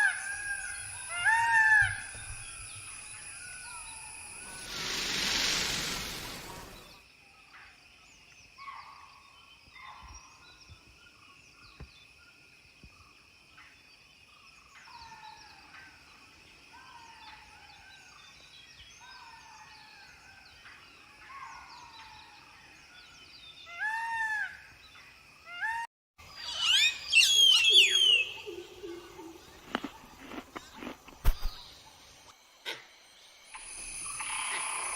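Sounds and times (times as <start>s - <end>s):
high insect-like whine: 0.0s - 7.2s, 31.0s - 34.9s
birds chirping and whistling: 26.3s - 29.2s.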